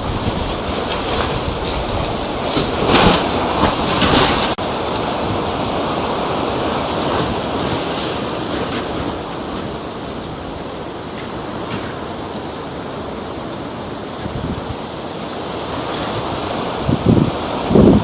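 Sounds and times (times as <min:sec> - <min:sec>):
rain: 0:00.0 - 0:18.0
storm wind: 0:00.0 - 0:18.0.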